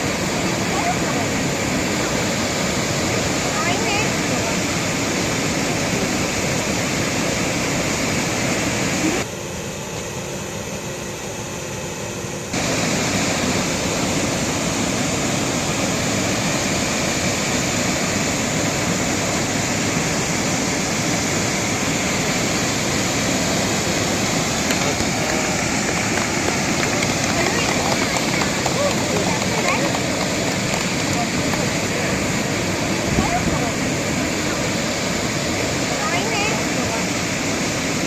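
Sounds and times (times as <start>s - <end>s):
waterfall rushing: 0.0s - 9.2s, 12.5s - 38.0s.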